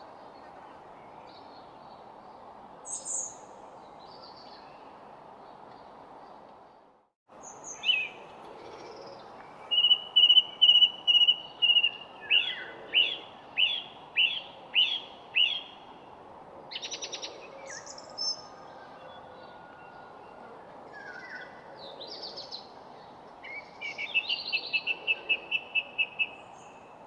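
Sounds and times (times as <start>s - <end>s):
songbirds singing: 7.4s - 16.1s, 16.7s - 27.0s.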